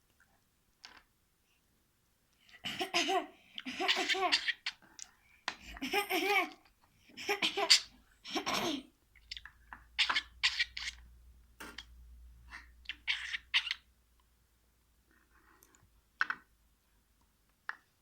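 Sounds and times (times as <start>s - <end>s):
budgerigar high sharp calls: 12.9s - 13.8s.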